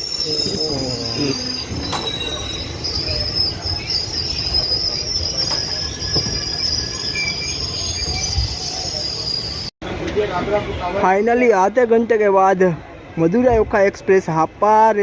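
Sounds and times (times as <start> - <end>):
train wheels squealing on rails: 0.0 - 9.7
low train rumble: 0.0 - 15.0.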